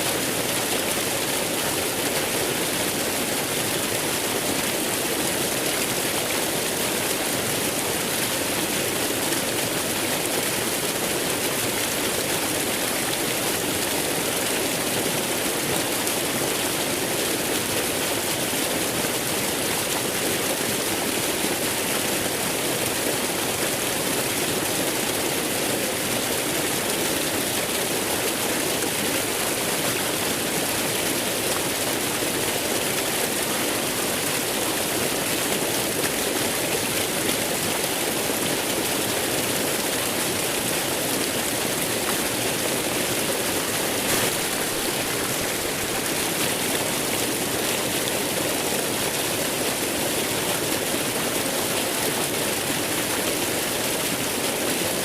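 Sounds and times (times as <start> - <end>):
waterfall rushing: 24.8 - 55.0.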